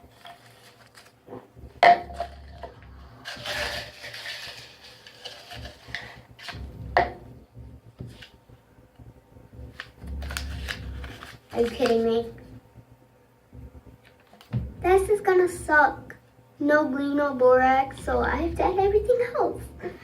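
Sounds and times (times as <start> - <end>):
paper rustling: 0.0 - 1.3, 3.2 - 6.6, 9.8 - 12.2
cup and items knocking on table: 1.8 - 2.4.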